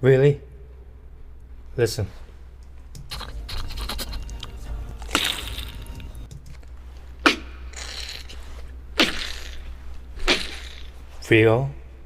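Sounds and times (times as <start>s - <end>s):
beatboxing mouth sounds: 3.0s - 6.3s, 7.2s - 8.4s, 9.0s - 11.0s.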